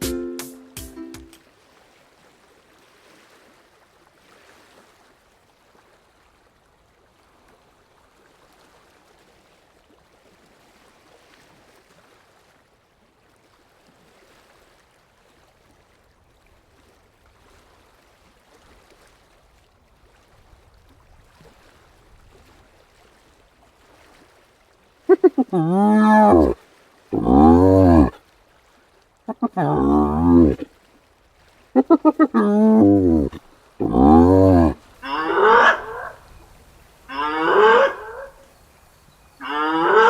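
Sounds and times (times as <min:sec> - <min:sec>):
faint outdoor background hiss: 0:31.8 - 0:39.9.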